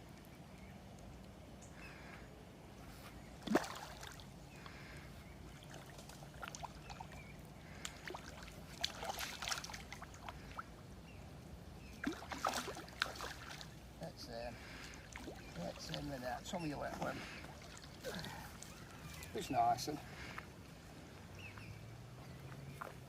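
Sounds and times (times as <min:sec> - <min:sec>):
fish thrashing and splashing water: 0:03.4 - 0:04.3, 0:05.6 - 0:10.7, 0:12.0 - 0:13.8.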